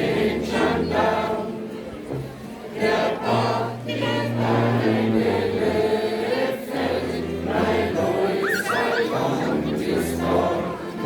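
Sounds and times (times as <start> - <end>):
group of people singing: 0.0 - 11.0.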